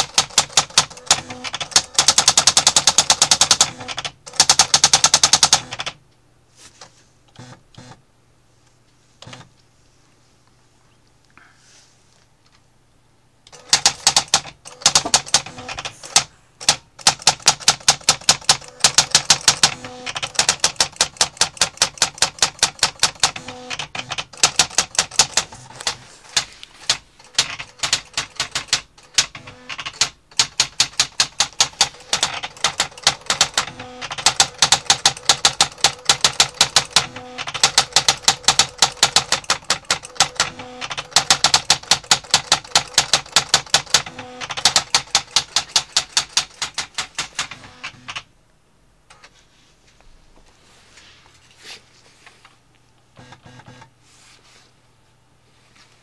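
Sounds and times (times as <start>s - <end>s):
electronic typewriter type strikes: 0.0s - 6.0s, 13.5s - 48.3s.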